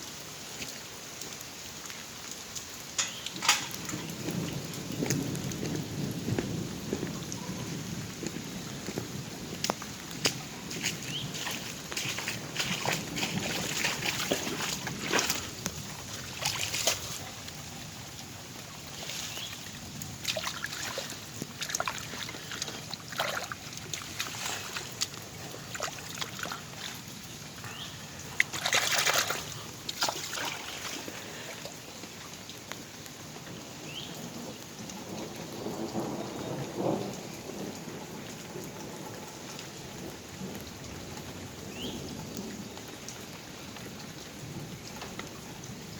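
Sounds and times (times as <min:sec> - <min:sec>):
water sloshing and splashing: 0:00.0 - 0:07.0, 0:08.2 - 0:33.2.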